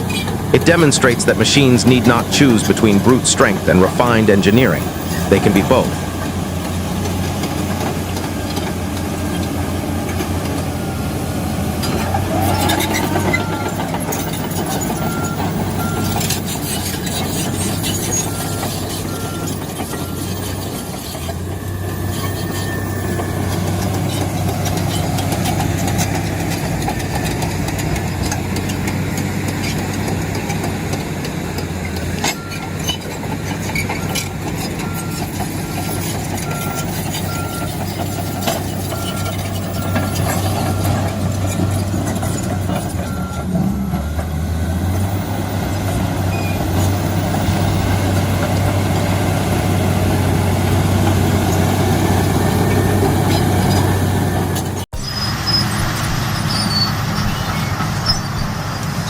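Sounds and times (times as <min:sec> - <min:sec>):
diesel engine running: 0:00.0 - 0:59.0
reversing alarm beeping: 0:18.1 - 0:20.6, 0:34.8 - 0:37.8.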